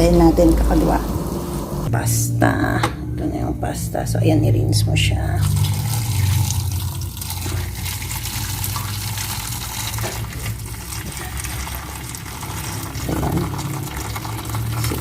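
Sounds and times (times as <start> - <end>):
tap water running and splashing: 5.4 - 15.0.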